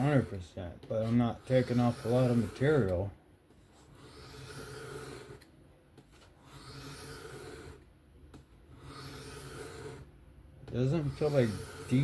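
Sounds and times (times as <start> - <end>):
knife rasping on sharpening stone: 1.0 - 3.0, 3.8 - 5.5, 6.4 - 7.8, 8.8 - 10.1, 10.8 - 12.0.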